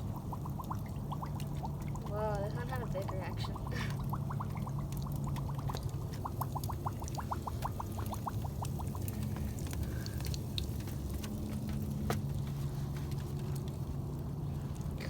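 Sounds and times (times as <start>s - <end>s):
gurgling bubble pops: 0.0s - 10.2s
candy fizzing in liquid: 0.0s - 12.4s.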